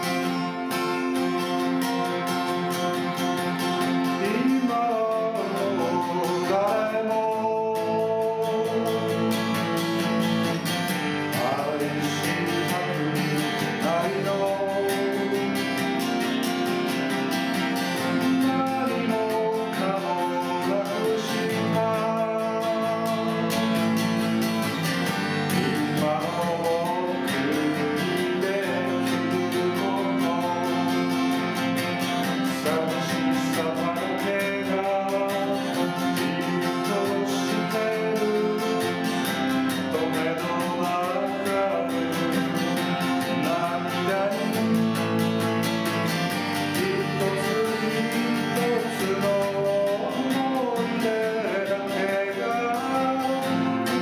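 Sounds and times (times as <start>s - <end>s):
acoustic guitar strummed: 0.0s - 54.0s
person singing: 0.0s - 54.0s.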